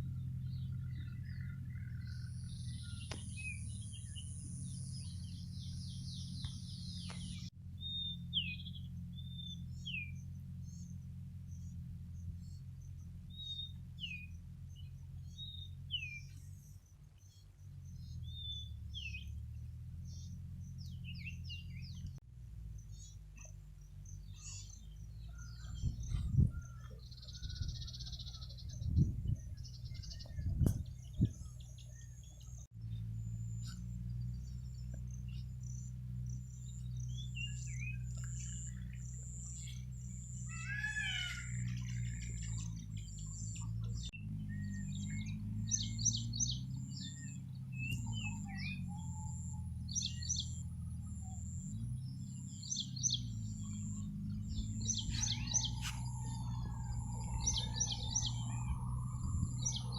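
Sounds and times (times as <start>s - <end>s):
steady low rumble: 21.8s - 40.5s, 49.4s - 59.9s
bird high trill: 40.2s - 42.6s.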